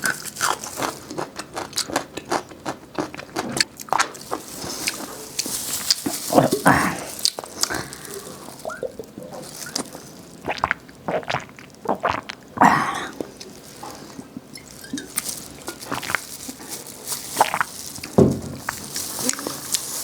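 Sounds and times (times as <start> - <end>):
wet squelchy chewing: 0.0 - 20.0
crunchy bite: 15.2 - 19.9.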